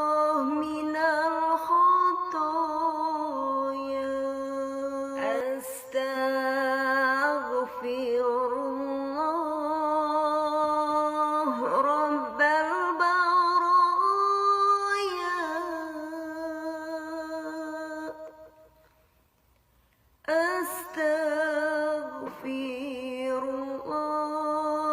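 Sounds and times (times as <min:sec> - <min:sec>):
person chanting melismatically: 0:00.0 - 0:18.7.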